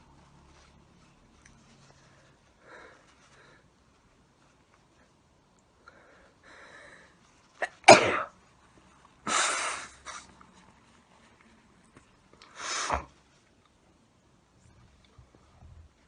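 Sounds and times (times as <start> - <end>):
person sneezing: 7.6 - 8.3, 9.3 - 10.3, 12.6 - 13.1.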